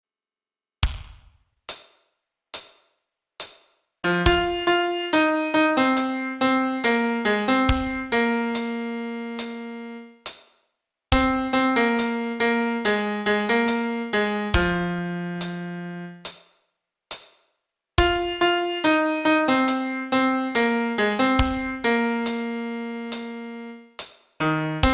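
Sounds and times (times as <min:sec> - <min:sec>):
piano melody: 0:04.0 - 0:10.1, 0:11.2 - 0:16.2, 0:18.0 - 0:23.8, 0:24.4 - 0:24.9.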